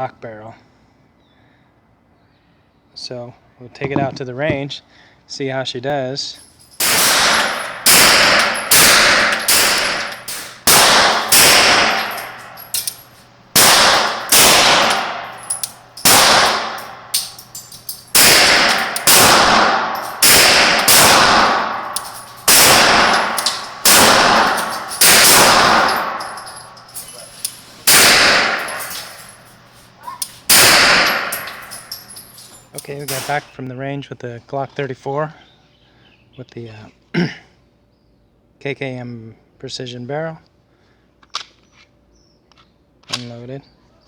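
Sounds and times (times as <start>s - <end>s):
pistol shots echoing: 6.8s - 33.5s.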